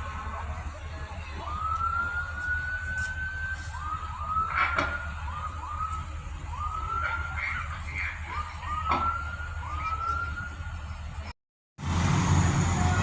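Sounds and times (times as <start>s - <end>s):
fire engine sirens: 0.0s - 13.0s
low engine rumble: 0.0s - 13.0s
loud noisy burst: 11.8s - 13.0s.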